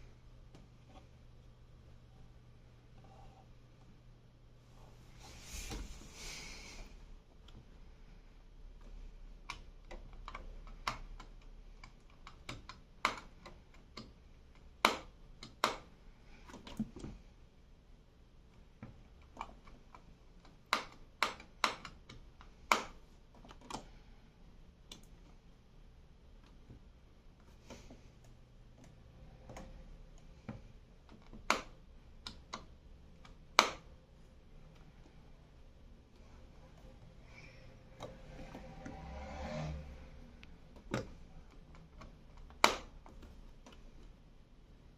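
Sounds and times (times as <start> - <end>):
low steady hum: 0.0 - 44.9
clicks and taps: 8.8 - 17.2, 18.5 - 23.9, 26.4 - 33.9, 40.4 - 44.2.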